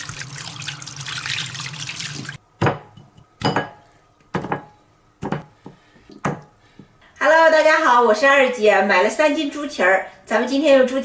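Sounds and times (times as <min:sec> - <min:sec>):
water running from tap: 0:00.0 - 0:02.4.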